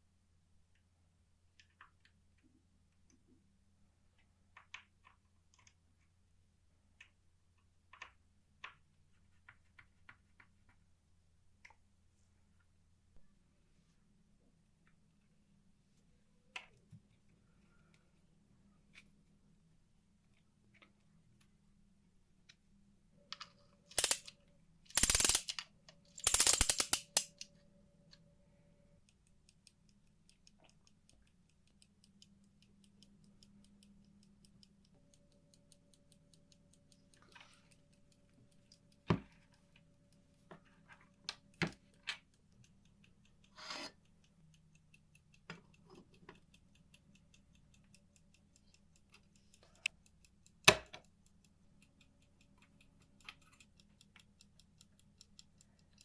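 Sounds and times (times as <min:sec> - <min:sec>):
rapid rattling clicks: 0:23.9 - 0:24.3, 0:24.9 - 0:25.6, 0:26.2 - 0:27.4.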